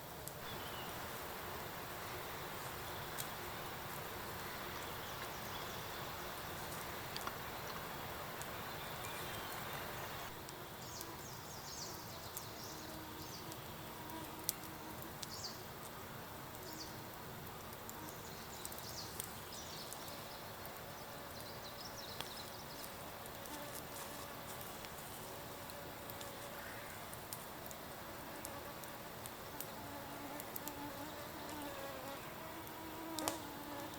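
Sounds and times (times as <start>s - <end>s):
steady background hiss: 0.0s - 33.9s
small birds chirping: 0.4s - 1.0s, 4.4s - 14.0s, 18.0s - 23.6s.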